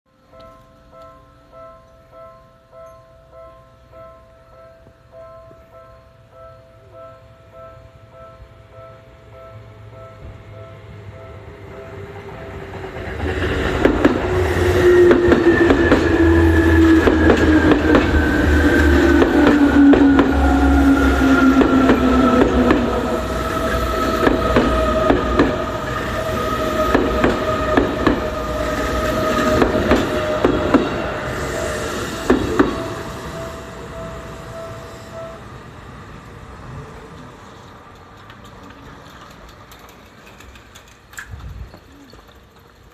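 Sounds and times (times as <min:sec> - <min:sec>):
train wheels clicking over rail joints: 0:12.5 - 0:25.6, 0:26.8 - 0:28.4, 0:29.0 - 0:31.0, 0:37.0 - 0:42.9.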